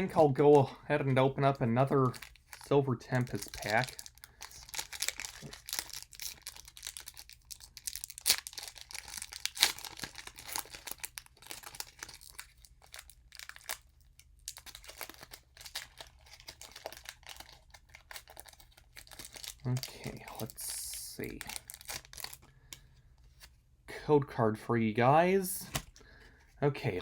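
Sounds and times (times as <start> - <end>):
foil wrapper crinkling and tearing: 1.5 - 22.8.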